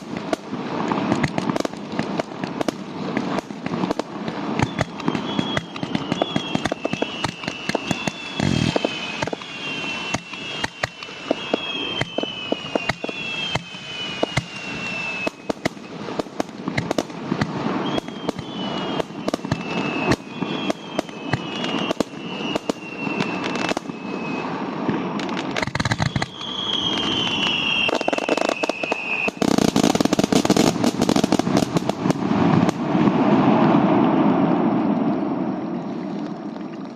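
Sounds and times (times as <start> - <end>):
deep firework booms: 0.0 - 35.6
fireworks crackling bangs: 0.0 - 36.9
firework whistles falling in pitch: 0.8 - 1.7, 4.5 - 32.9.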